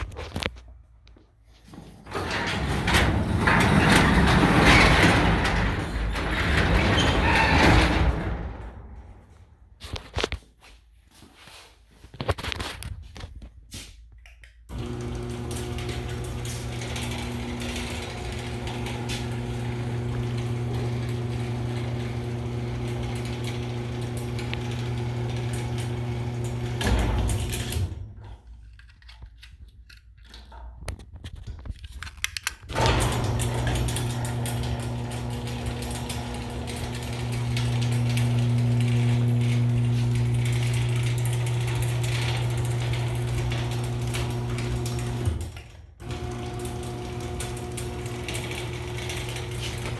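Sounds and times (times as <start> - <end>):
garage door clunk: 1.9 - 9.6, 14.7 - 28.4, 32.6 - 49.9
garage door opener motor running: 2.0 - 9.2, 14.7 - 28.3, 32.7 - 49.9.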